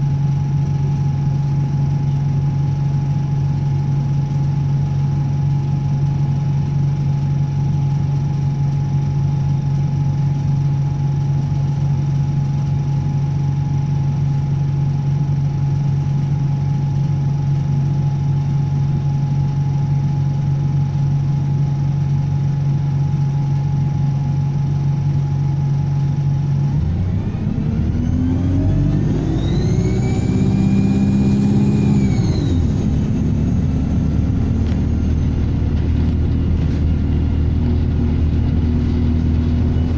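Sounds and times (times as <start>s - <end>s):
bus diesel engine: 0.0s - 39.9s
high turbo whistle: 27.9s - 33.7s.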